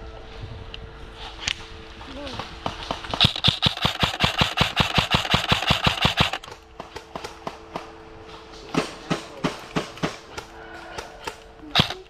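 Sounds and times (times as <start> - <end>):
steady low hum: 0.0 - 12.0
airsoft gun firing: 2.6 - 8.0, 8.8 - 12.0.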